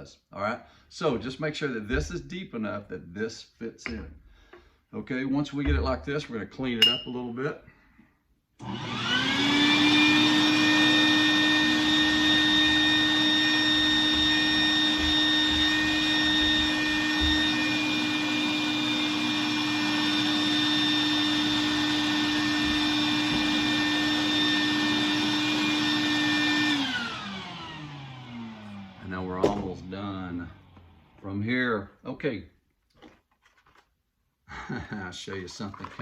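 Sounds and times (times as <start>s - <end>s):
vacuum cleaner running: 8.6s - 31.3s.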